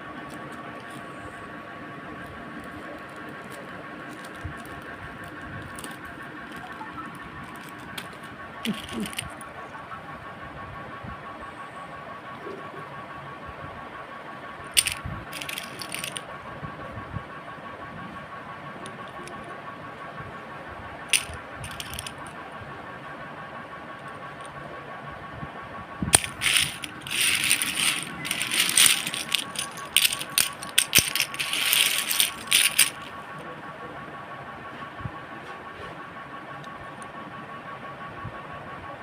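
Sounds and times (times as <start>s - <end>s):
small hard objects clattering: 3.4s - 9.4s, 14.7s - 16.2s, 18.9s - 19.4s, 21.1s - 22.3s, 26.1s - 33.1s.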